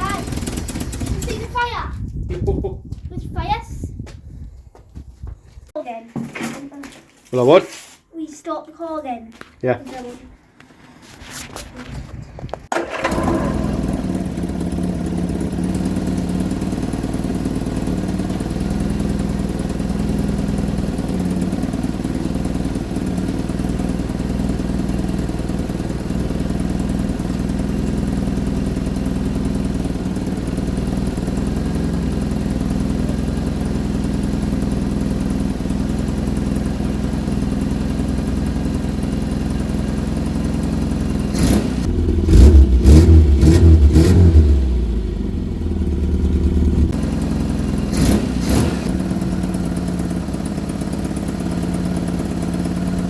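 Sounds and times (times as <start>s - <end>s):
car engine starting and idling: 0.0s - 1.8s, 12.6s - 53.0s.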